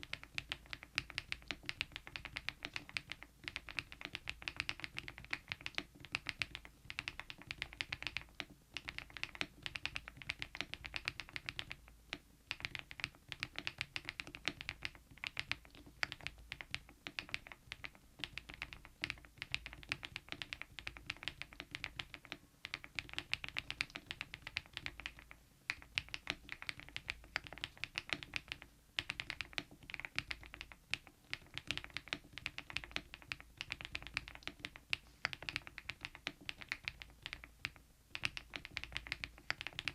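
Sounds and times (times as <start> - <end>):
mechanical keyboard typing: 0.0 - 11.8, 12.5 - 39.9.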